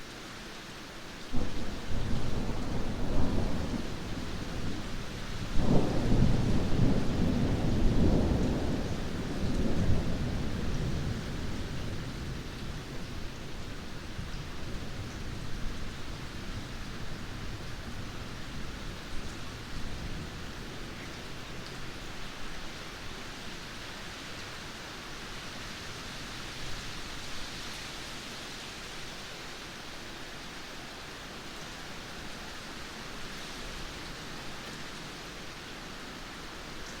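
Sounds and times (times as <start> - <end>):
light rain: 0.0 - 37.0.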